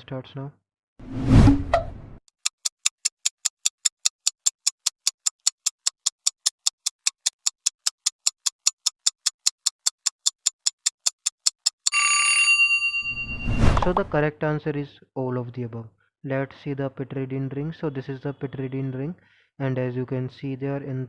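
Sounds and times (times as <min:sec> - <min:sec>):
clock ticking: 0:02.3 - 0:12.0
bright bell ding: 0:11.9 - 0:13.6.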